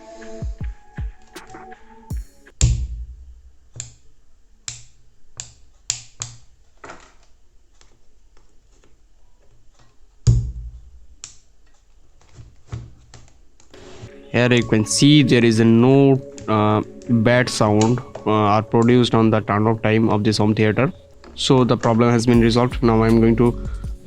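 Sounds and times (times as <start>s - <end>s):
song with drum hits: 0.0s - 3.6s, 22.3s - 24.0s
heavy subwoofer bass: 2.1s - 3.6s, 22.3s - 24.0s.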